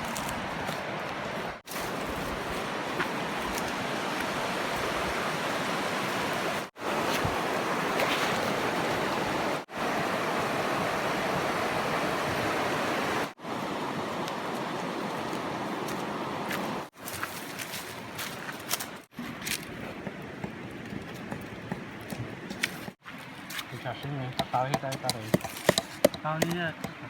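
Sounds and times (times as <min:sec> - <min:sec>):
flowing water rushing: 0:00.0 - 0:19.0.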